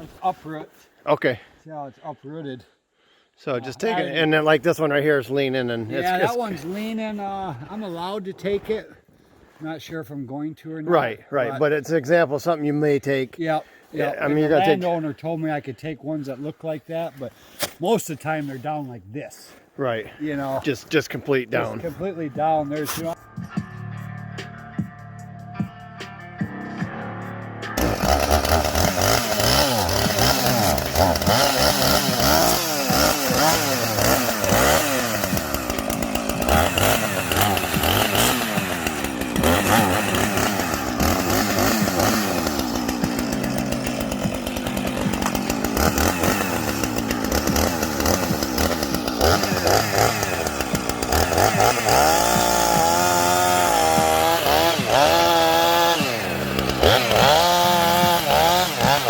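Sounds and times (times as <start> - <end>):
chainsaw cutting wood: 14.2 - 14.8, 27.8 - 59.0.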